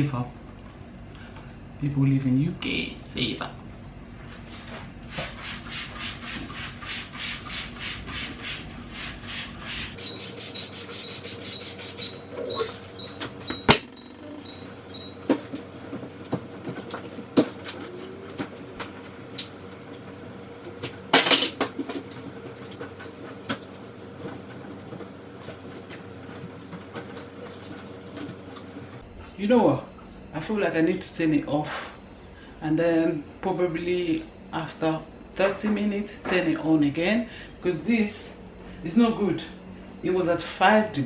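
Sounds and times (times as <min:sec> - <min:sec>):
knocks and clicks of shelves: 0:13.2 - 0:14.2.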